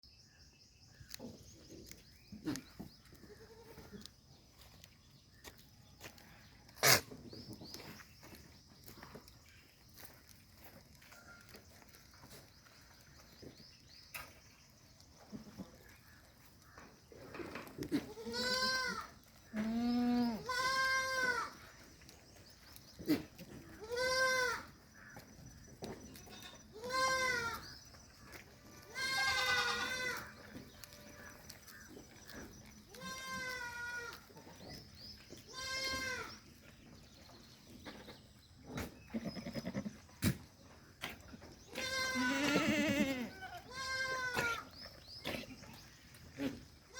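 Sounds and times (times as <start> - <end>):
goats bleating: 17.9 - 21.7, 23.1 - 24.8, 26.2 - 27.7, 28.8 - 30.4, 32.9 - 34.3, 35.5 - 36.4, 39.1 - 40.0, 41.7 - 44.7.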